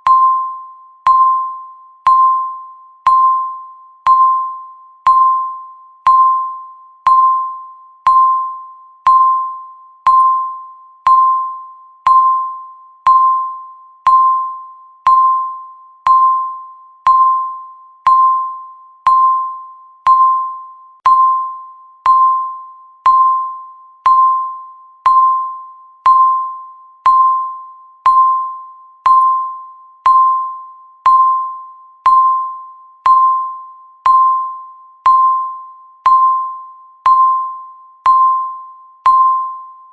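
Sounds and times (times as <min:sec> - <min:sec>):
short ringing tone: 0:00.0 - 0:39.9
timer ticking: 0:19.1 - 0:39.5.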